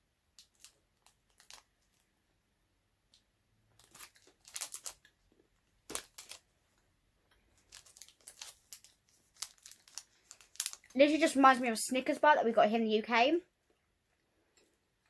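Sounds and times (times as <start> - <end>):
snack wrapper crinkling and tearing: 0.4 - 2.0, 3.8 - 6.5, 7.4 - 11.0.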